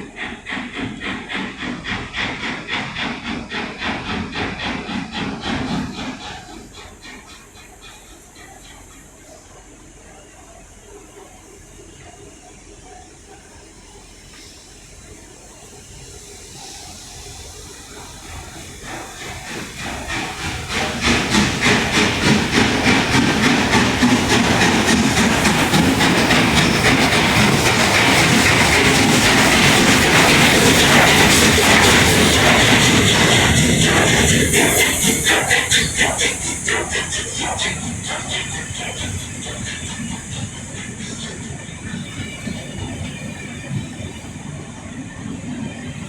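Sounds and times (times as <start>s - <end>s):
train hiss: 0.0s - 46.0s
train passing close by: 0.0s - 46.0s
wheels clattering over rails: 18.4s - 42.8s.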